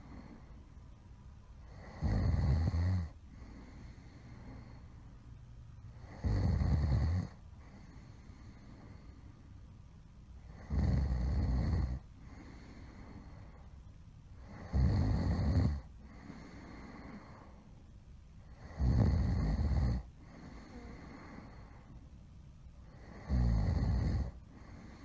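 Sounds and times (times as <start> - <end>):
quiet breathing: 0.0 - 25.0
person snoring loudly: 1.7 - 3.1, 6.0 - 7.4, 10.5 - 12.0, 14.5 - 15.9, 18.6 - 21.4, 23.0 - 24.7.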